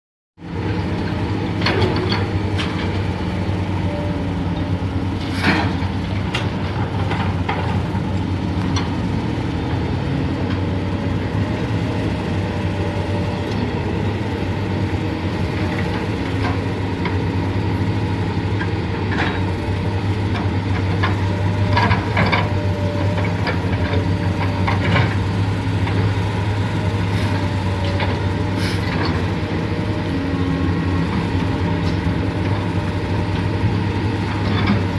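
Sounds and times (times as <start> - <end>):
excavator diesel engine running: 0.4 - 34.9.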